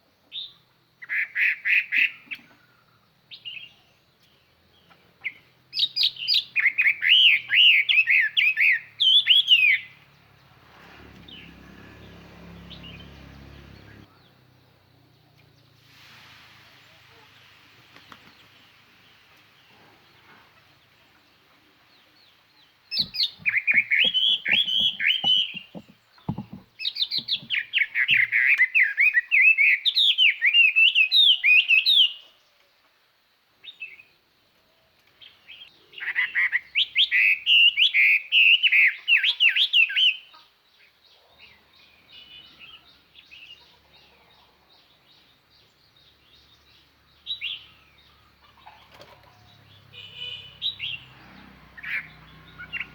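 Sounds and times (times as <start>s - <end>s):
bird singing whistled phrases: 5.8s - 9.9s, 23.0s - 25.5s
soft knocks: 23.0s - 27.6s.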